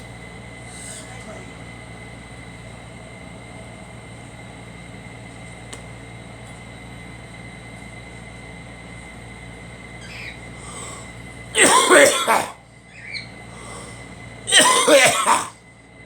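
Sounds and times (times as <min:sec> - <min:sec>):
background hum and hiss: 0:00.0 - 0:16.0.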